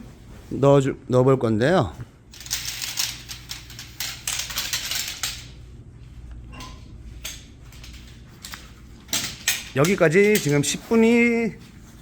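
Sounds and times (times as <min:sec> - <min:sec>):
tent pole sections clinking: 0:07.2 - 0:11.0.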